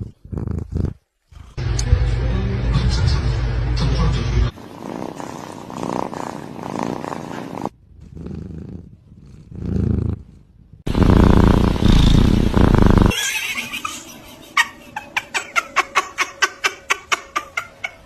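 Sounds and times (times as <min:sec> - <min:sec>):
cat purring: 0:00.0 - 0:01.6, 0:04.5 - 0:13.2.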